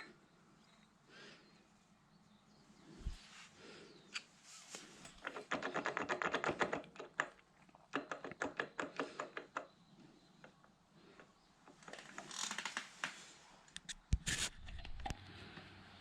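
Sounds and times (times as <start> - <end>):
hand tool rapid clicking: 5.2 - 9.7.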